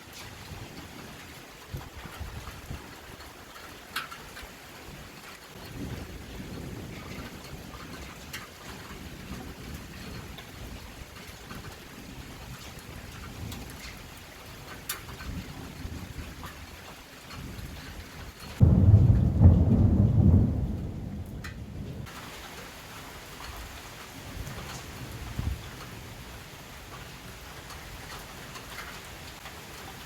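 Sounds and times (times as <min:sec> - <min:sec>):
steady rain: 0:00.0 - 0:30.0
raindrop ticks: 0:00.1 - 0:30.0
loud low thunderclap: 0:18.6 - 0:22.1.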